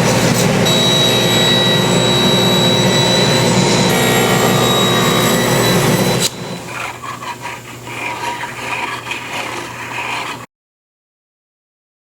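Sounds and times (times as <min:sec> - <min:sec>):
table saw running: 0:00.0 - 0:08.0.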